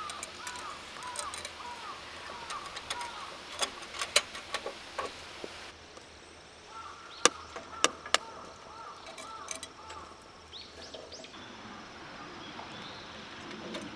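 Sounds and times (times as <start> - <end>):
firewood crackling and popping: 0.0 - 6.1
bird calling: 0.0 - 13.3.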